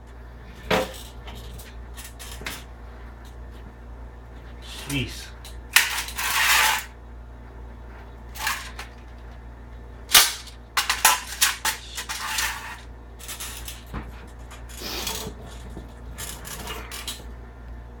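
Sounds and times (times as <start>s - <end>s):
metal tools clinking: 10.1s - 17.3s.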